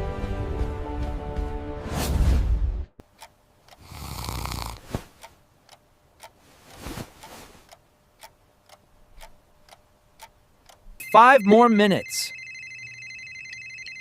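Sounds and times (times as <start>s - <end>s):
music: 0.0s - 2.9s
clock ticking: 3.0s - 4.6s, 5.2s - 12.2s
person snoring: 3.8s - 5.0s.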